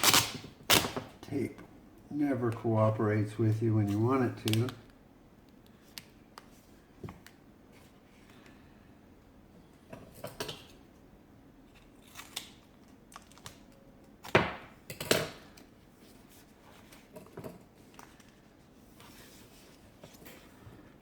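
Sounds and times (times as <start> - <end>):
duct tape crackling: 0.0 - 1.1.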